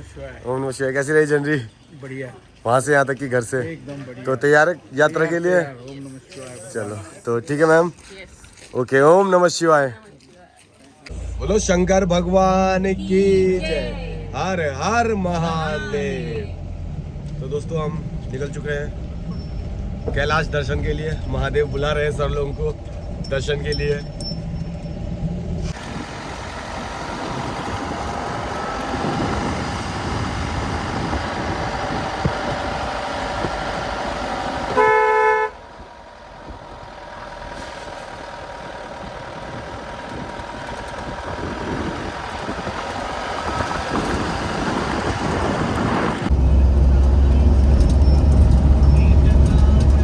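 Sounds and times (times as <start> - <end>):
vehicle engine and road noise: 0.0 - 50.0
heavy low rumble: 11.1 - 34.8, 35.5 - 50.0
short horn honk: 34.7 - 35.6.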